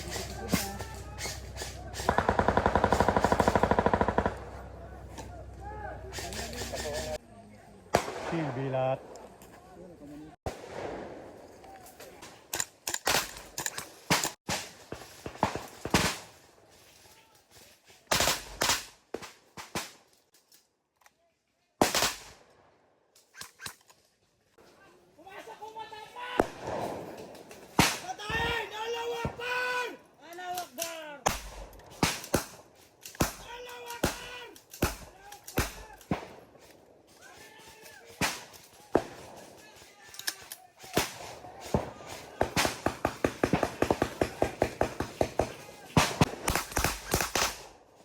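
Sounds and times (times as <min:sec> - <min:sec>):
airsoft guns firing: 0:00.0 - 0:07.2, 0:12.8 - 0:16.4, 0:21.8 - 0:22.4, 0:26.3 - 0:29.8, 0:31.2 - 0:36.7, 0:37.6 - 0:48.0.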